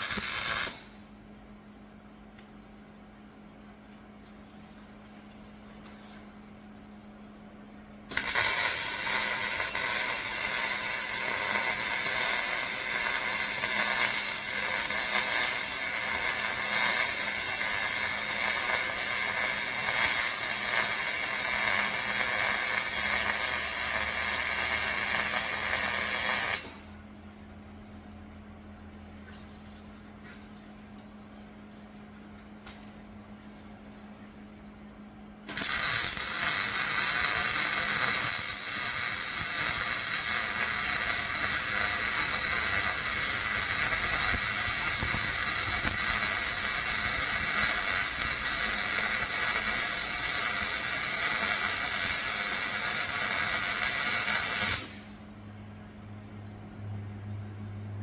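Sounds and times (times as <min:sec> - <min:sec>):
welder hissing: 0:00.0 - 0:01.0, 0:08.1 - 0:26.9, 0:35.5 - 0:55.1.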